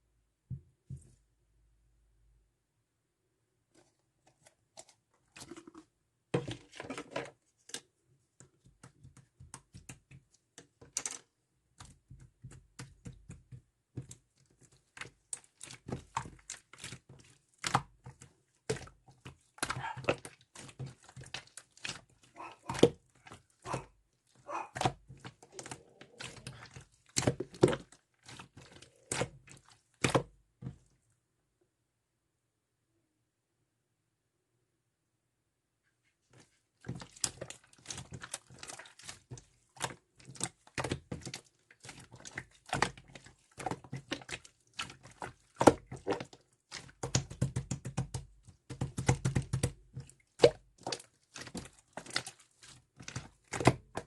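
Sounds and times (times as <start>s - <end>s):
small objects clicking and knocking: 8.8s - 14.2s.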